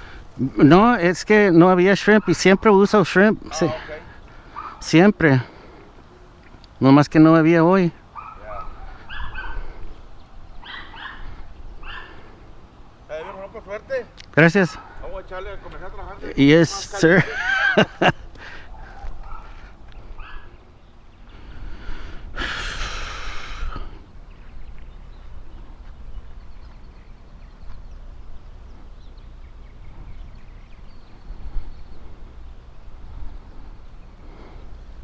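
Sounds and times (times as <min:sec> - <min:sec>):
wind buffeting microphone: 0:07.9 - 0:14.2, 0:14.8 - 0:35.0.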